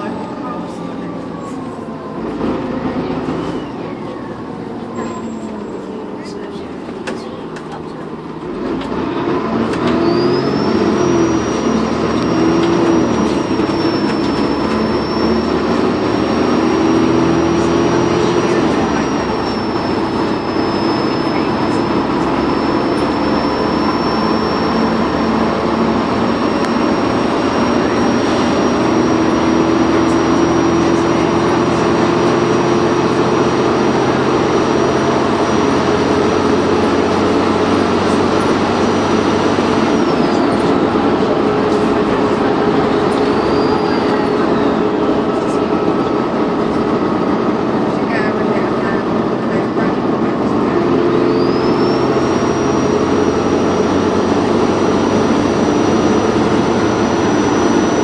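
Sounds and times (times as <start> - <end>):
bus diesel engine under load: 0.0 - 58.0
turbocharger whistle: 9.8 - 41.0, 41.9 - 45.0, 50.8 - 58.0.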